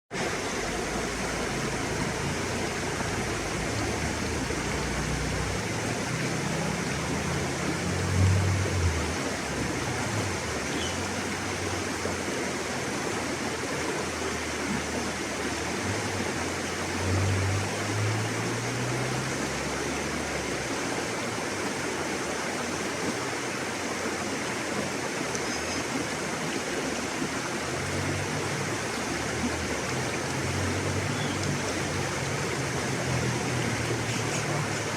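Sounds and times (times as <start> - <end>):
river water rushing: 0.1 - 34.9.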